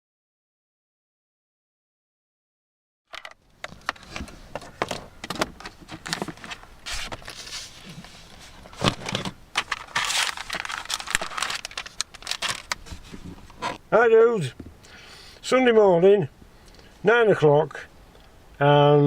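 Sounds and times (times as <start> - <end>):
rustling: 3.6 - 13.8.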